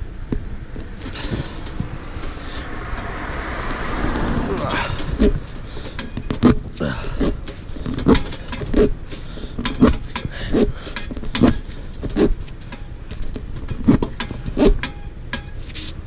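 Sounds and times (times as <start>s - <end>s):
reamer rasping in tire: 0.0s - 16.0s
rubbery squeak: 9.8s - 12.6s, 13.4s - 14.8s.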